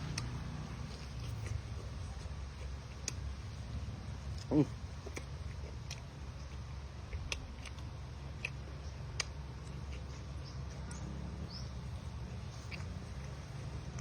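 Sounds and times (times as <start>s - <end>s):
chewing crispy food: 0.0s - 14.0s
steady low hum: 0.0s - 14.0s.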